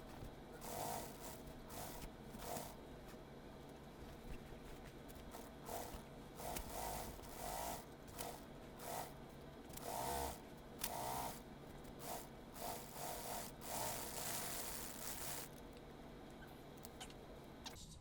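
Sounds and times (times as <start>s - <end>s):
sewing machine stitching: 0.6s - 2.8s, 5.6s - 11.4s, 12.0s - 15.6s.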